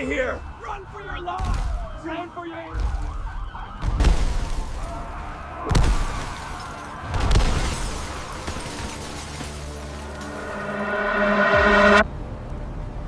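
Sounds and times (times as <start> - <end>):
deep rumble: 9.5 - 12.0.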